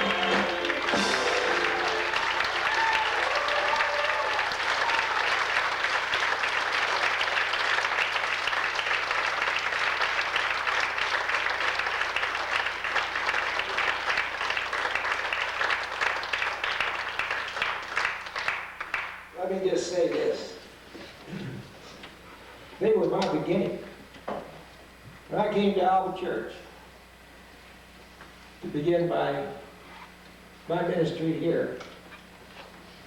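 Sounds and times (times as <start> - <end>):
song last note: 0.0 - 2.4
voices calling out: 0.0 - 5.2
audience applauding: 0.0 - 19.3.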